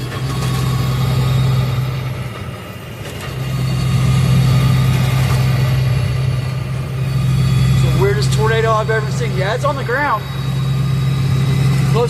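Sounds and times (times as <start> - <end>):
car engine and road noise: 0.0 - 12.0.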